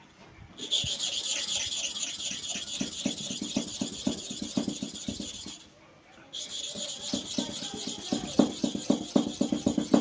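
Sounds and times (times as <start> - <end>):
blade rubbing on sharpening stone: 0.6 - 5.7, 6.4 - 10.0.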